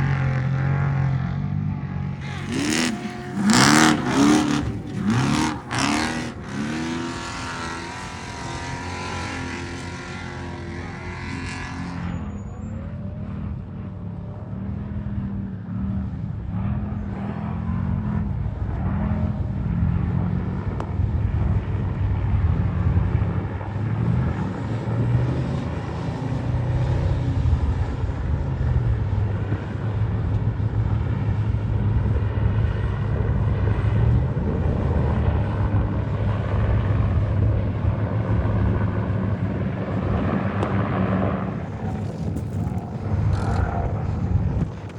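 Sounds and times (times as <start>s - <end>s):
race vehicle engine revving: 2.0s - 12.5s, 38.6s - 44.9s.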